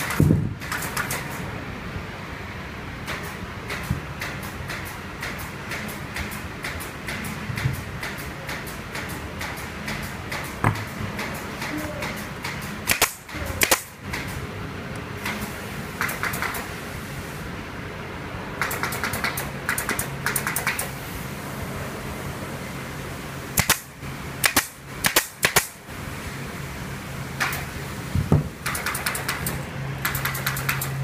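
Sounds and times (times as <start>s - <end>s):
sharp cracks of workshop tools: 0.0s - 1.4s, 3.0s - 14.4s, 16.0s - 16.7s, 18.6s - 20.9s, 23.5s - 25.8s, 27.4s - 27.7s, 28.6s - 31.0s.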